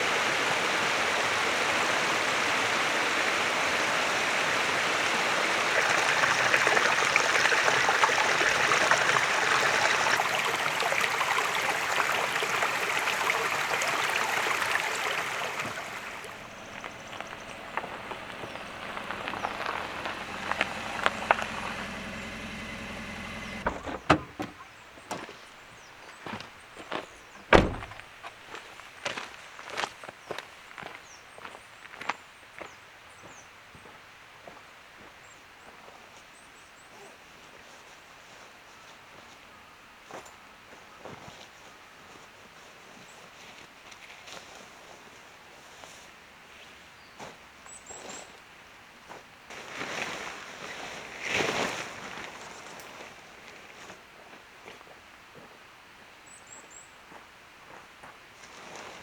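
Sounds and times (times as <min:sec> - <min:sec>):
low engine hum: 0:14.0 - 0:24.7
car road and cabin noise: 0:14.1 - 0:24.7, 0:27.5 - 0:28.0
car door knocks and clicks: 0:16.3 - 0:24.6, 0:27.5 - 0:28.0.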